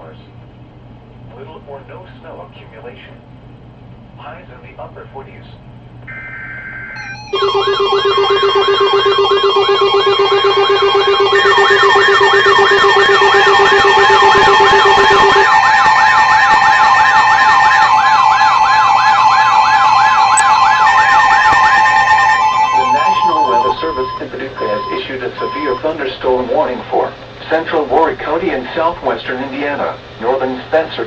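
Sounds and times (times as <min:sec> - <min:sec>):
warbling siren tone: 0:06.1 - 0:25.8
two-tone alert signal: 0:06.1 - 0:25.9.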